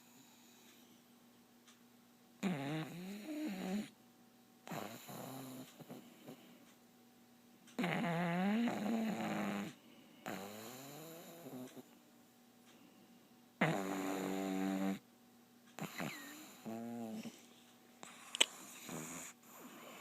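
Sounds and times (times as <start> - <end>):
droning snores: 2.4 - 4.0, 4.6 - 6.4, 7.8 - 11.9, 13.6 - 15.0, 15.8 - 17.4, 18.5 - 20.0.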